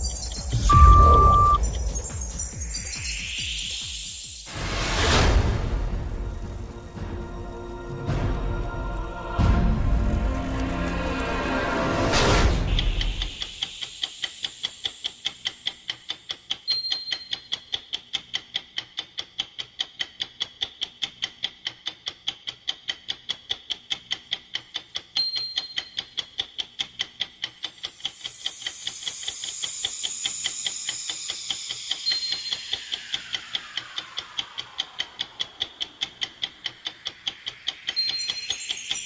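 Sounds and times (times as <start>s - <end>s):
whoosh: 4.4s - 7.1s
fast clock ticking: 12.8s - 39.0s
bright chime: 27.9s - 33.7s, 37.1s - 39.0s.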